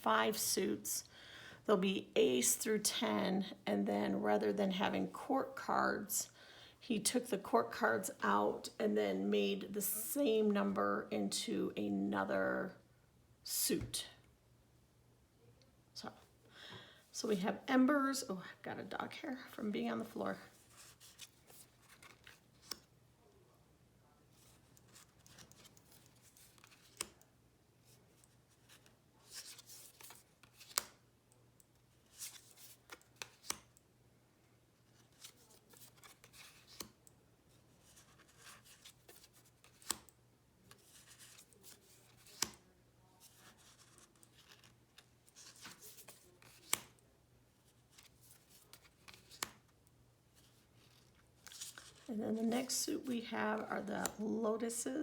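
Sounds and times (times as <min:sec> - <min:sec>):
cards flipping by hand: 0:20.6 - 0:22.9, 0:24.4 - 0:27.2, 0:28.2 - 0:31.0, 0:31.7 - 0:33.8, 0:34.8 - 0:37.0, 0:37.8 - 0:47.0, 0:47.7 - 0:49.8, 0:50.4 - 0:52.1.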